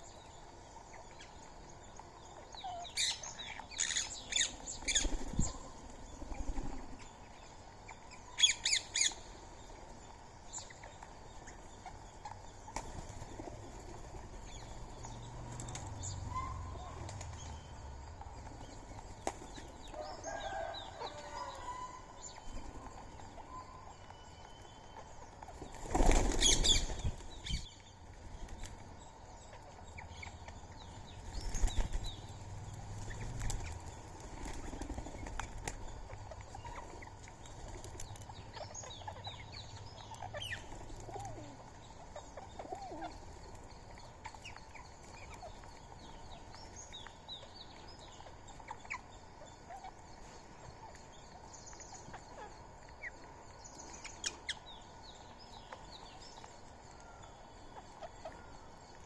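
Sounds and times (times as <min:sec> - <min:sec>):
birds chirping: 0:00.0 - 0:59.0
wings flapping: 0:04.8 - 0:06.9, 0:12.7 - 0:14.5, 0:25.5 - 0:27.6, 0:31.3 - 0:32.2, 0:32.8 - 0:35.9.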